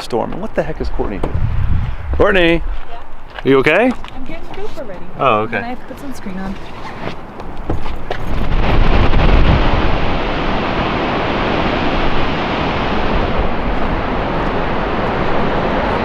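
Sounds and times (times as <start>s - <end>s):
wind buffeting microphone: 0.0s - 6.6s, 7.2s - 16.0s
waterfall roaring: 8.5s - 16.0s.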